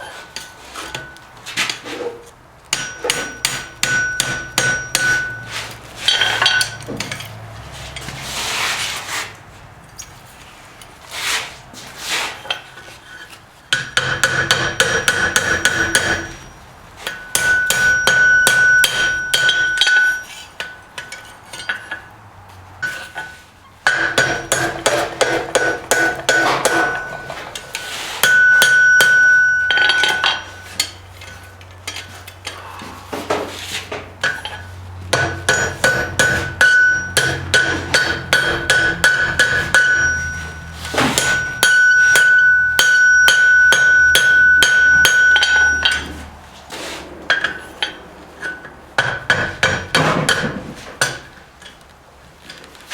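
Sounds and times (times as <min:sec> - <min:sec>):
anvil ringing: 0:02.7 - 0:07.4, 0:13.7 - 0:22.0, 0:25.6 - 0:31.4, 0:34.2 - 0:46.2.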